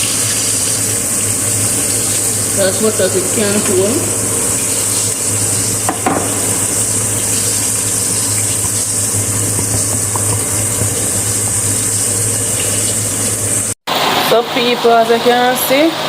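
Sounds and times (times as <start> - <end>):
chicken frying in hot oil: 0.0 - 16.0
low hum: 2.7 - 9.3.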